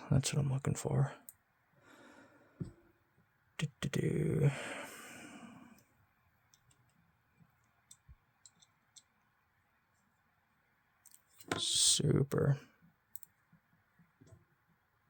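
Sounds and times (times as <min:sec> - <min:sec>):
small metal parts clicking: 0:07.8 - 0:09.1.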